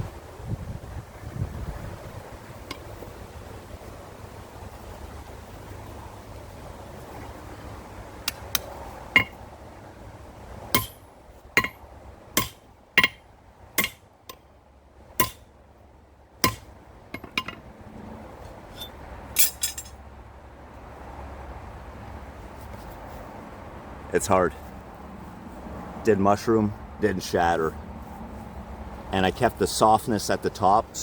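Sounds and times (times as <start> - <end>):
hammer striking steel: 8.3 - 9.4, 10.7 - 11.0, 11.6 - 11.8, 12.4 - 13.2, 13.8 - 14.4, 15.2 - 15.4, 16.4 - 17.6, 18.7 - 19.9
metal clinks: 9.2 - 9.4, 17.2 - 17.6, 18.7 - 20.0.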